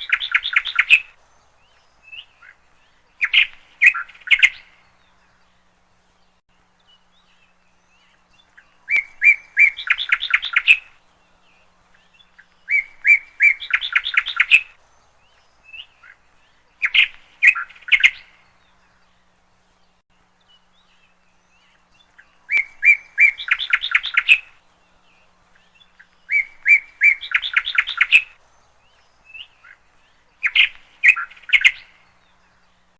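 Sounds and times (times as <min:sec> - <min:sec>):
bird calling with chattering notes: 0:00.0 - 0:32.9.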